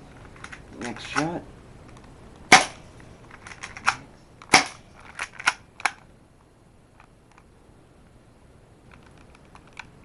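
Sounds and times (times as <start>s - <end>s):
airsoft pistol snap: 3.8s - 4.8s.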